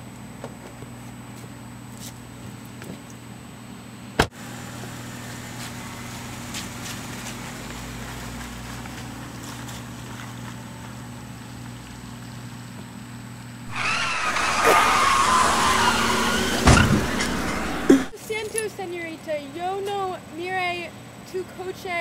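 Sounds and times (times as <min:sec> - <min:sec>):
car engine humming: 0:13.6 - 0:18.1.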